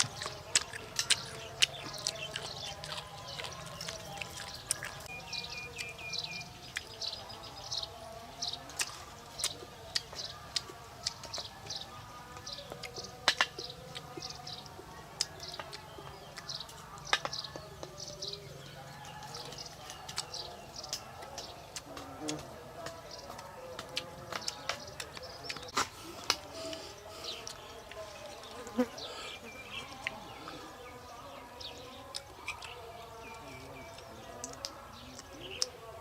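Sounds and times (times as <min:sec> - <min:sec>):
small birds chirping: 0:00.0 - 0:36.0.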